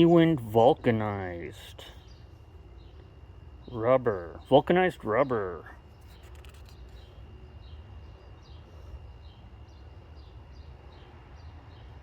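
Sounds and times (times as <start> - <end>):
small bird chirping: 5.9 - 12.0.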